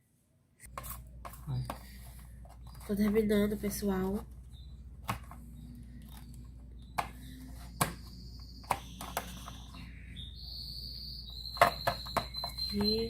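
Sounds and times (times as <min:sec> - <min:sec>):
faint high steady tone: 0:02.6 - 0:13.0.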